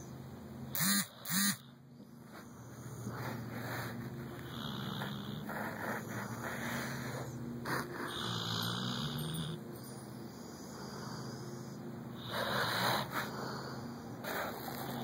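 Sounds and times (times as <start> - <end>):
dog snoring: 2.0 - 15.0.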